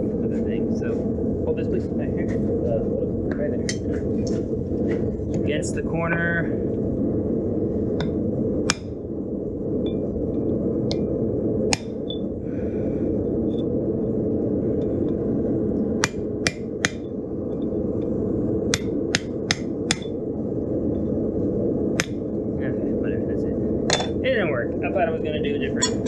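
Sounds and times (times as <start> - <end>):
hammer striking steel on anvil: 8.0 - 9.0, 11.7 - 12.2, 16.0 - 17.1, 18.7 - 20.2, 22.0 - 22.2.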